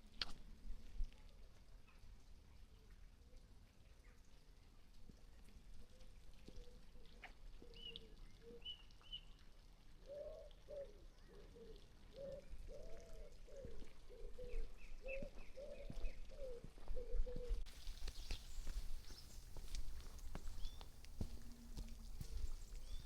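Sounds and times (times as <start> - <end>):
songbird chirps: 1.0 - 23.0
pigeon cooing: 10.0 - 17.6.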